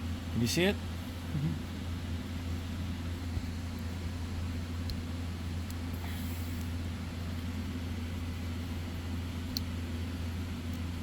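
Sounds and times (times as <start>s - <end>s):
low mechanical hum: 0.0s - 11.0s
light clicks of small parts: 9.5s - 9.7s.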